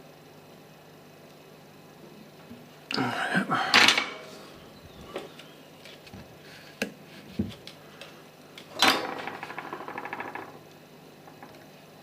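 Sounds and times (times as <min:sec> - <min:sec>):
pulsing buzzing rattle: 0:08.8 - 0:11.7.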